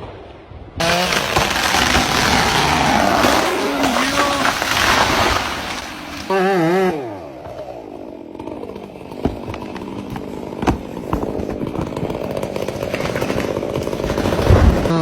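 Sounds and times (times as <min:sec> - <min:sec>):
chainsaw running: 0:00.8 - 0:15.0.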